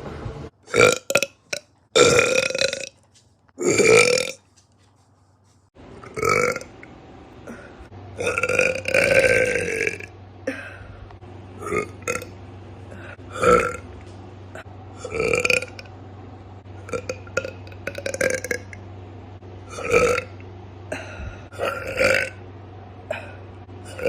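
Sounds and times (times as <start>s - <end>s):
woman burping: 3.6s - 4.4s, 13.0s - 13.8s, 19.7s - 22.4s, 23.1s - 24.0s
low hum: 5.0s - 24.0s.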